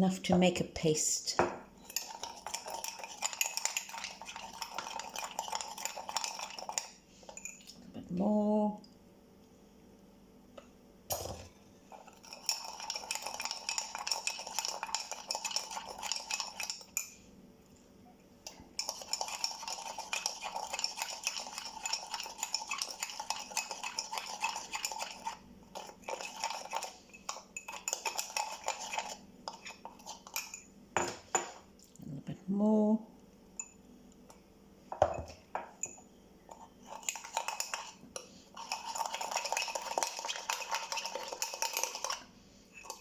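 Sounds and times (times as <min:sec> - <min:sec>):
spoon clinking in a mug: 0:01.4 - 0:07.8, 0:11.1 - 0:17.2, 0:18.4 - 0:31.6, 0:35.0 - 0:42.2, 0:42.8 - 0:43.0.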